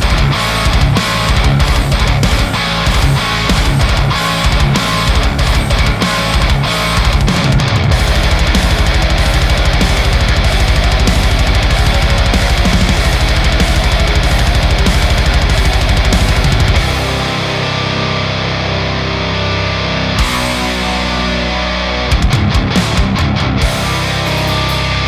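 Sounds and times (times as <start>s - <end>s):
fast kick drum rhythm: 0.0s - 17.0s
distorted electric guitar: 0.0s - 25.0s.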